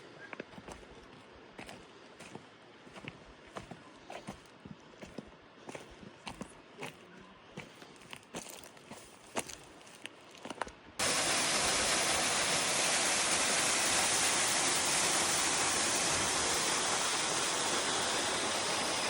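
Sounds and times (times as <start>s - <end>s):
footsteps on rock: 1.6s - 7.0s, 7.6s - 10.8s
waterfall rushing: 11.0s - 19.0s.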